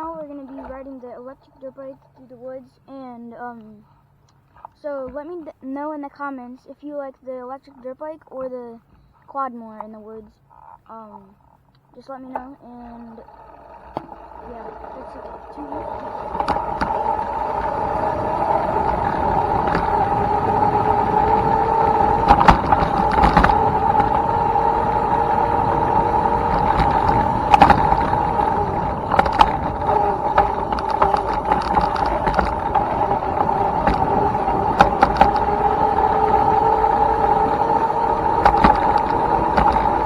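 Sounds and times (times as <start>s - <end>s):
bike knocking and clattering: 12.4s - 40.0s
electric motor whining: 12.7s - 40.0s.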